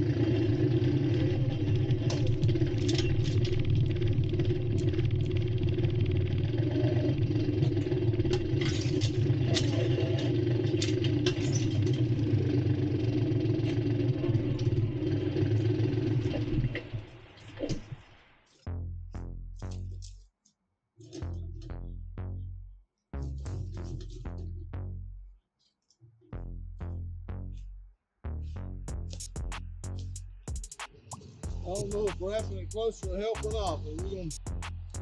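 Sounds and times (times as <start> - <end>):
tractor engine running: 0.0 - 9.4, 28.9 - 35.0.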